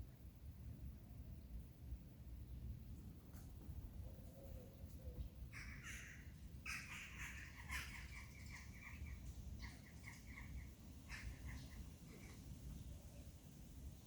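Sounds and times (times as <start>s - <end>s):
harsh raspy bird calls: 5.5s - 12.4s.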